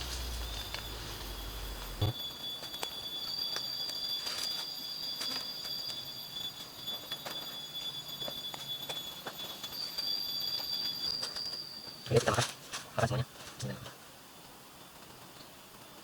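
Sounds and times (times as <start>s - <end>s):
low rumble: 0.0s - 2.1s
high-pitched insect drone: 0.0s - 13.3s.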